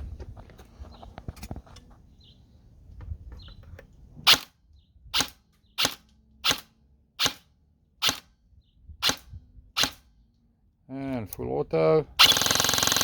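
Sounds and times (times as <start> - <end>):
airsoft gun shots: 5.2 - 8.3, 9.0 - 10.0, 12.2 - 13.0.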